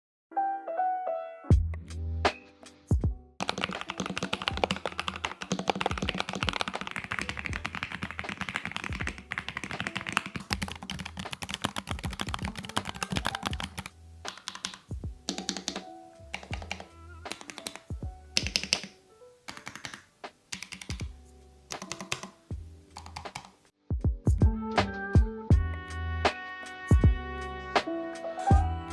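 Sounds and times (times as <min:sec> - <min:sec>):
background music with bass line: 0:01.5 - 0:03.3, 0:23.9 - 0:28.9
mechanical keyboard typing: 0:03.4 - 0:21.1, 0:21.7 - 0:23.6.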